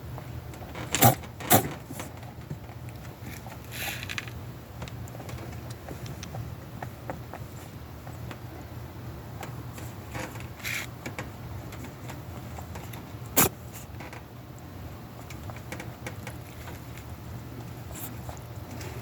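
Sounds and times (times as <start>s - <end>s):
rabbit sneezing: 0.9s - 2.1s, 13.3s - 13.9s, 17.8s - 19.0s.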